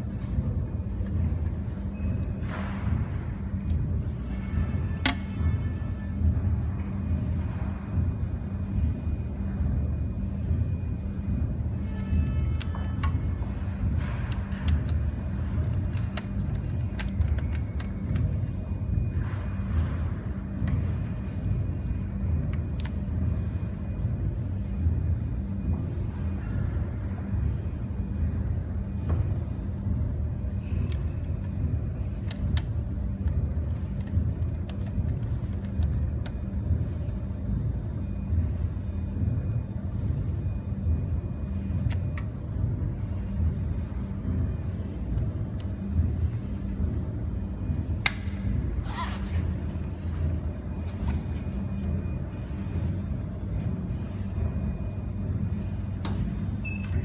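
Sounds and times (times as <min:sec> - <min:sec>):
low mechanical hum and rumble: 0:00.0 - 0:57.0.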